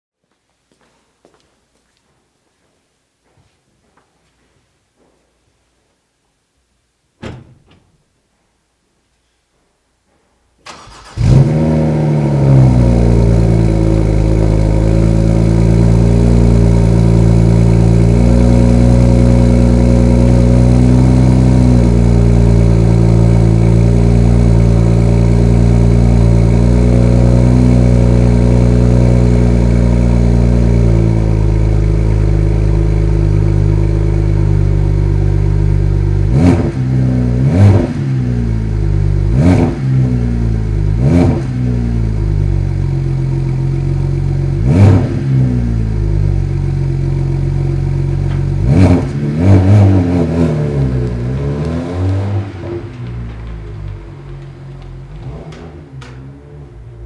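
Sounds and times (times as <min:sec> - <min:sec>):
engine revving in quick blips: 0:10.6 - 0:13.6, 0:44.5 - 0:45.7, 0:48.4 - 0:57.0
car engine starting and idling: 0:10.6 - 0:57.0.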